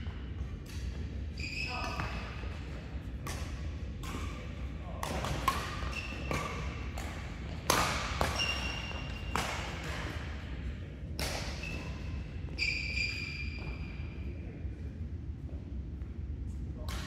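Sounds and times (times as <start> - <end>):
sneaker squeaks on court floor: 1.3 - 2.4, 5.6 - 6.8, 8.0 - 9.6, 11.4 - 14.1
racket hitting shuttlecock: 3.2 - 10.2, 11.2 - 11.7.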